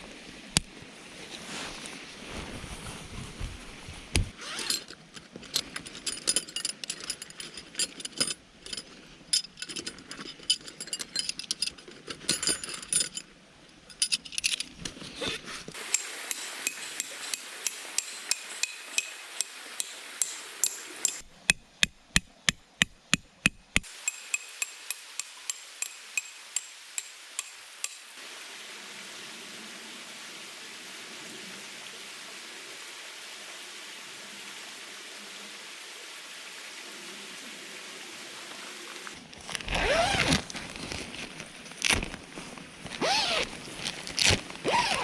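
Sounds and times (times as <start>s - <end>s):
metal clinks and taps: 15.8s - 28.2s
ringing metal hammer strikes: 15.9s - 28.2s.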